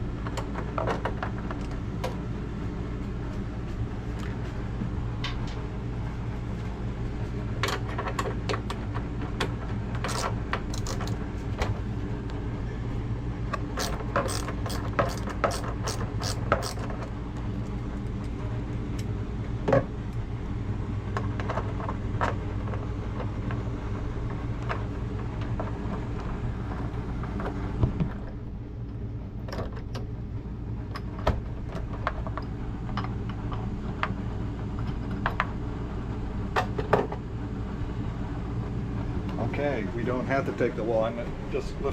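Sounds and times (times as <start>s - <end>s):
steady low hum: 9.6s - 19.4s
metal clicks and tool rattles: 10.0s - 11.2s, 13.8s - 17.0s.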